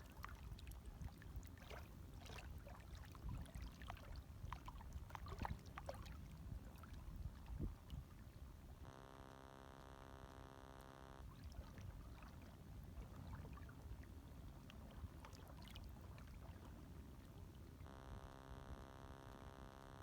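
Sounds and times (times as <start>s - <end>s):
water splashes and trickles: 0.0s - 8.8s, 11.3s - 17.9s
small waves lapping: 0.0s - 8.9s, 11.0s - 19.8s.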